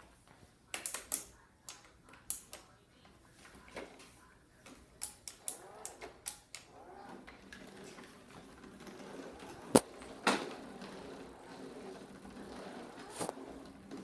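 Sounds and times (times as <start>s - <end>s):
sharp plastic clicks: 0.7s - 2.7s, 5.0s - 6.7s
carpet sweeper motor humming: 6.7s - 14.0s.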